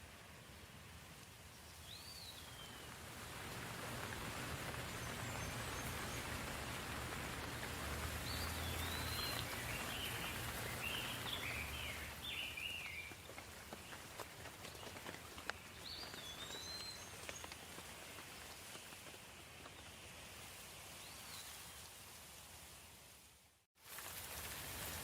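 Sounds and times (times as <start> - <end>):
soft rain falling: 0.0 - 25.0
single raindrops ticking: 2.4 - 19.8
bird chirping: 8.2 - 14.0, 14.7 - 17.7.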